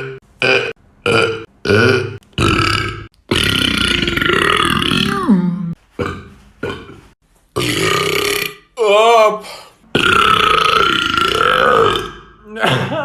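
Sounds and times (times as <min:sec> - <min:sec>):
man belching: 0:00.0 - 0:05.2, 0:07.6 - 0:08.7, 0:09.9 - 0:12.9.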